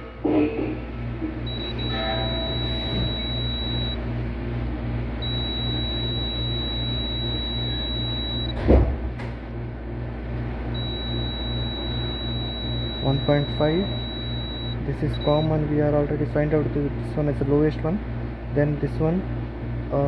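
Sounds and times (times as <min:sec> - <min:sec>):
multimeter beep: 0:01.4 - 0:04.1, 0:05.2 - 0:08.6, 0:10.7 - 0:15.8
loud thump: 0:08.6 - 0:09.2.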